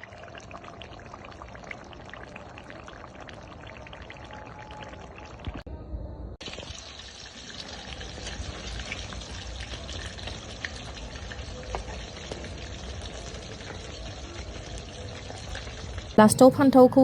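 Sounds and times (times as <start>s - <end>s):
oil crackling and popping: 0.0s - 5.6s, 6.4s - 16.2s
food sizzling in hot oil: 6.4s - 16.2s.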